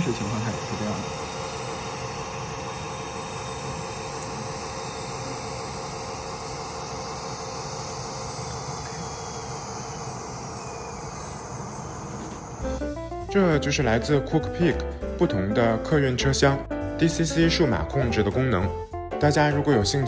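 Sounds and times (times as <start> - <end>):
cooling fan whirring hiss: 0.0 - 12.9.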